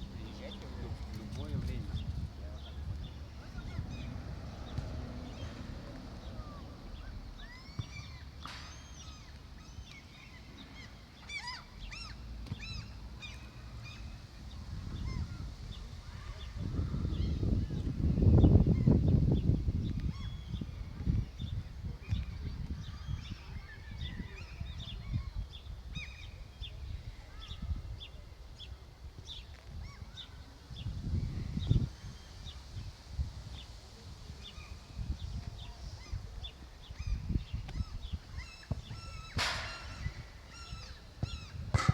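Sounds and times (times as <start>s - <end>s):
wind rumble on microphone: 0.0s - 9.9s, 11.8s - 41.9s
birds chirping: 0.0s - 41.9s
gulls calling: 6.2s - 14.1s, 35.6s - 41.9s.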